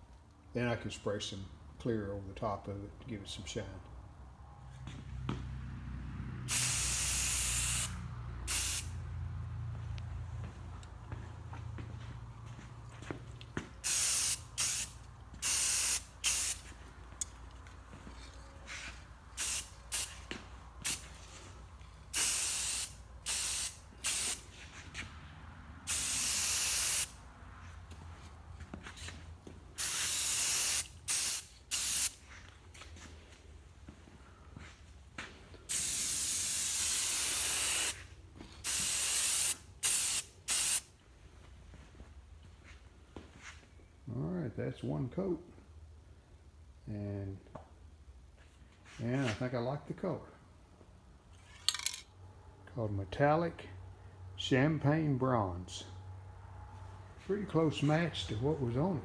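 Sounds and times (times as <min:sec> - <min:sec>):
spray paint can hissing: 0:06.5 - 0:08.9, 0:13.8 - 0:16.7, 0:19.4 - 0:21.1, 0:22.1 - 0:24.5, 0:25.9 - 0:27.2, 0:29.8 - 0:32.2, 0:35.7 - 0:40.9.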